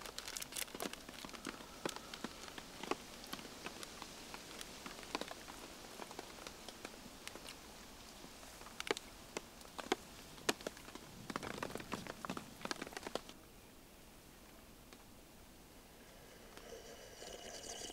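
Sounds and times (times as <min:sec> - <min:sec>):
steady rain falling: 0:00.0 - 0:13.4.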